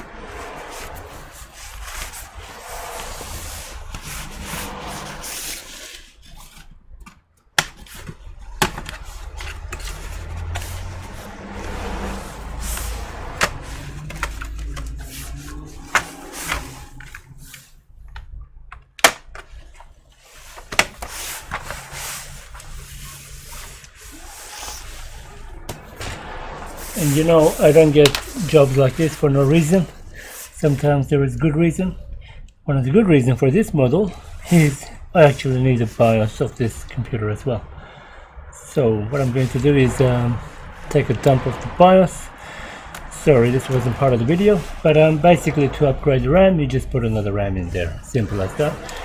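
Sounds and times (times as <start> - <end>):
plastic parts scraping and rubbing: 0.0 - 30.9, 42.8 - 46.1, 46.7 - 49.0.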